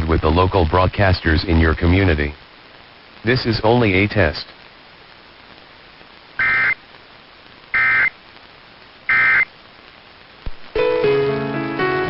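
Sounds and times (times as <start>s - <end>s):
faint steady hiss: 0.0s - 12.0s
buzzy digital data tones: 6.4s - 6.9s, 7.7s - 8.2s, 9.1s - 9.6s.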